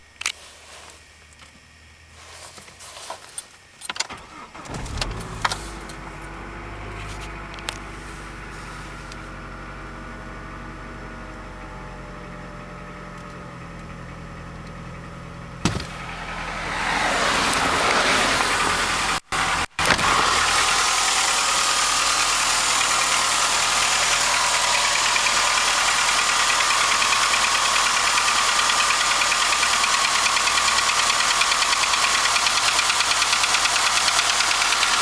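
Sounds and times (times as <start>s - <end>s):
car engine starting and idling: 0.0s - 35.0s.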